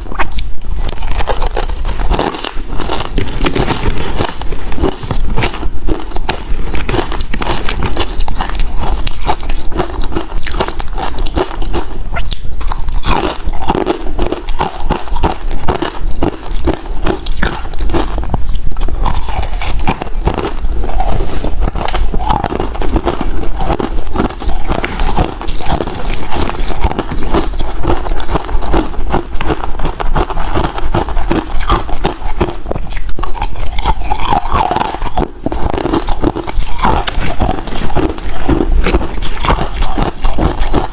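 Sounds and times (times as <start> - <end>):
ice being chewed: 0.0 - 40.9.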